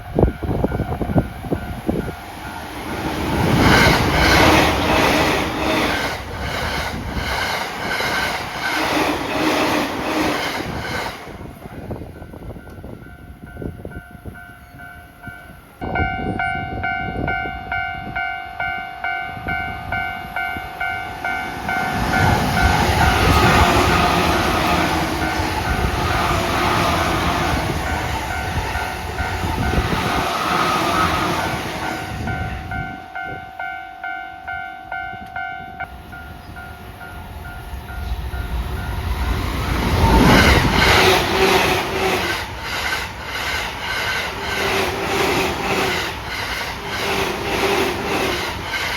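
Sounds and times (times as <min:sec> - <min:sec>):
train rushing past: 0:00.0 - 0:48.9
level crossing bell ringing: 0:32.3 - 0:36.4.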